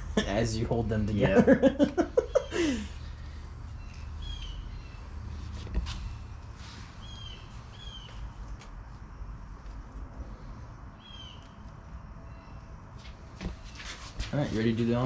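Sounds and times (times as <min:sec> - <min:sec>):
steady low hum: 0:00.0 - 0:15.0
bird chirping: 0:02.2 - 0:05.3, 0:07.0 - 0:08.4, 0:10.9 - 0:12.8.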